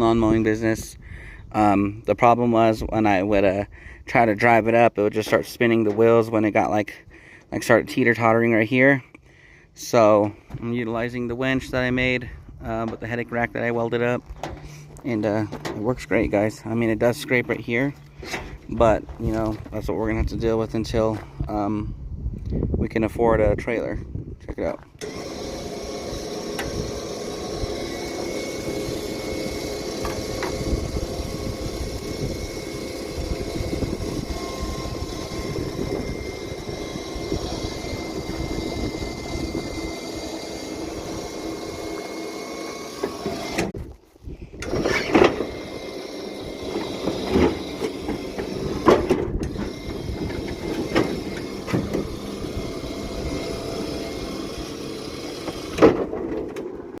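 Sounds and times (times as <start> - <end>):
winch running with faint whine: 25.0 - 43.8, 44.6 - 57.0.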